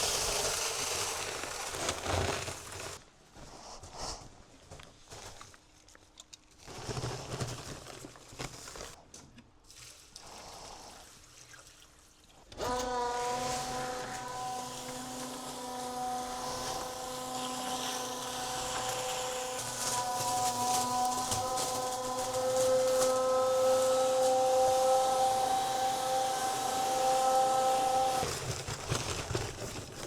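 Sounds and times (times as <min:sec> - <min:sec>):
concrete mixer running: 0:00.0 - 0:03.0, 0:12.6 - 0:30.0
water and material pouring: 0:00.0 - 0:03.0, 0:09.6 - 0:30.0.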